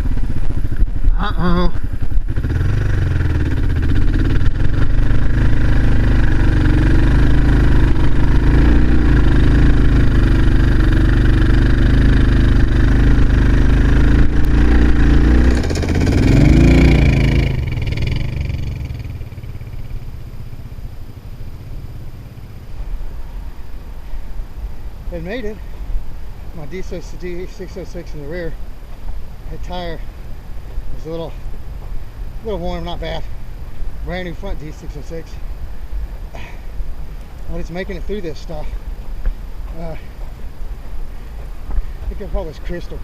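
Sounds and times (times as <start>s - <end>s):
motorcycle engine revving in sand: 0.0s - 24.2s.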